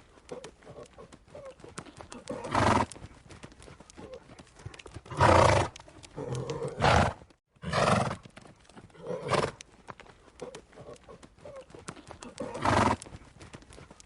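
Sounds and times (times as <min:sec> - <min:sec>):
horse snorting: 0:00.3 - 0:03.0, 0:05.1 - 0:08.2, 0:12.2 - 0:13.1
horse snuffling: 0:10.4 - 0:13.2.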